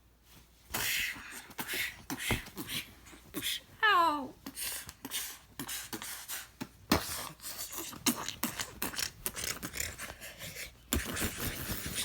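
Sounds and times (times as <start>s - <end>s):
plush toys rustling and thumping: 0.2s - 3.3s, 10.9s - 12.0s.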